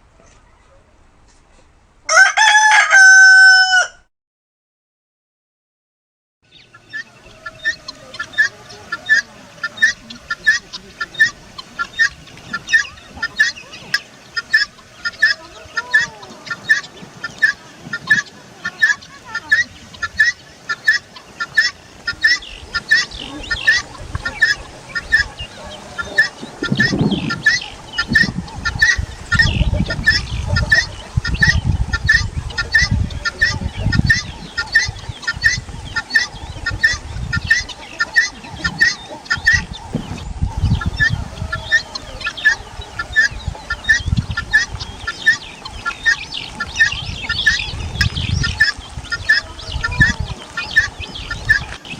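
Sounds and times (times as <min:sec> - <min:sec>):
farm bird calling: 0:00.1 - 0:04.0, 0:06.5 - 0:51.9
low rumbling: 0:21.3 - 0:51.9.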